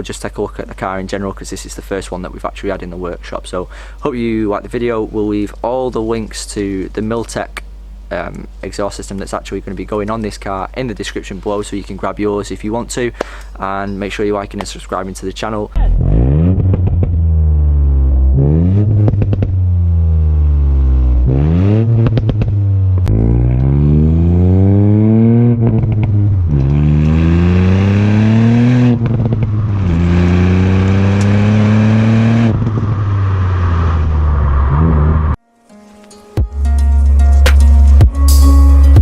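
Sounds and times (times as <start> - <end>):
exhaust clicks and pops: 15.7 - 35.4
car engine accelerating through gears: 15.8 - 35.4.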